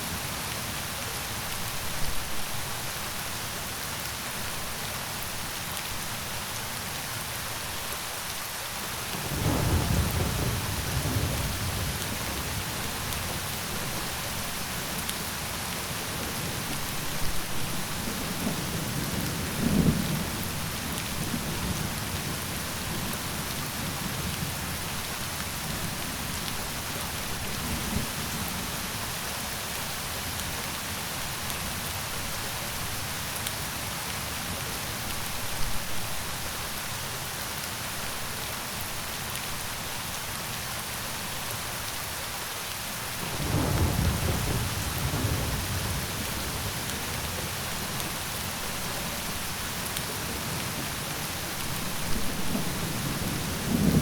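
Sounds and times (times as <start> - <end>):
rain falling: 0.0 - 54.0
thunder rumbling: 9.3 - 13.3, 43.3 - 48.0, 51.7 - 54.0.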